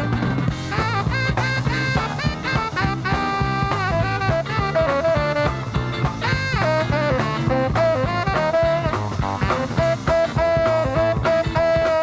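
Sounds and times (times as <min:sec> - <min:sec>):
guitar: 0:00.0 - 0:12.0
horn melody: 0:00.0 - 0:12.0
steady drum beat: 0:00.0 - 0:12.0.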